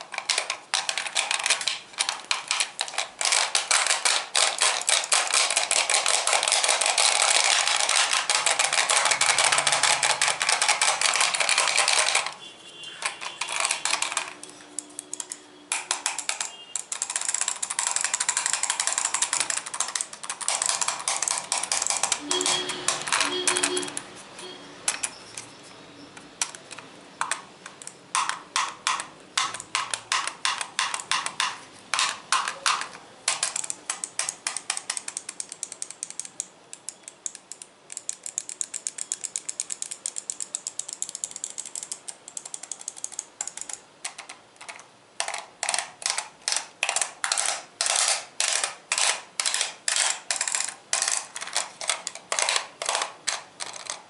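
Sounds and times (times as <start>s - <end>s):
tapping on hard objects: 15.2s - 24.1s, 28.2s - 35.1s, 45.2s - 54.0s.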